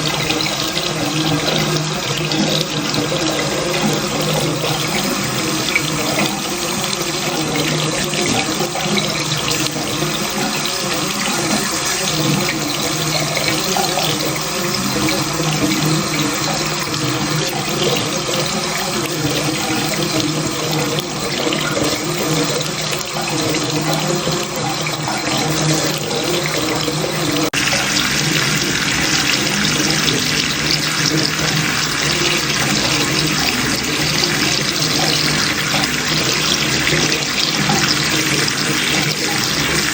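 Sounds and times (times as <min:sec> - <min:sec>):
tap water running into sink: 0:00.0 - 0:39.9.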